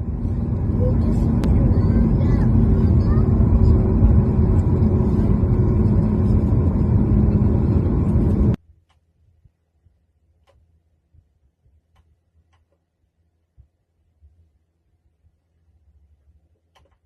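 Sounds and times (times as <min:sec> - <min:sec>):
car engine humming: 0:00.0 - 0:08.6.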